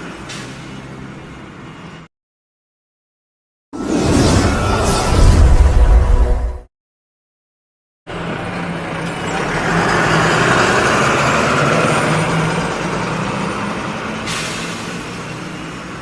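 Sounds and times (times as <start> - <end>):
bus engine driving: 0.0 - 2.1, 8.1 - 16.0.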